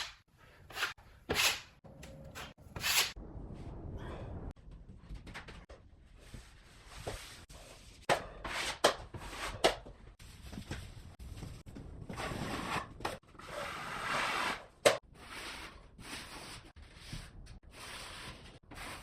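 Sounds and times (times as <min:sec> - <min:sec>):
tool scraping drywall: 0:00.0 - 0:03.2, 0:12.1 - 0:19.0.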